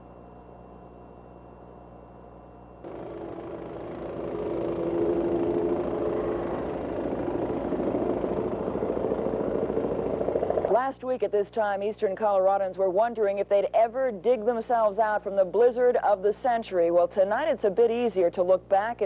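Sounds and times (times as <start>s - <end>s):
faint steady hum: 0.0s - 19.0s
engine running with fast pulse: 2.8s - 10.7s.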